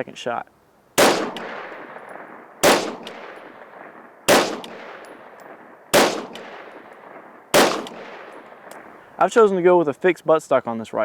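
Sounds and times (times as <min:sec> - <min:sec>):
rifle shots with echo: 0:01.0 - 0:08.9.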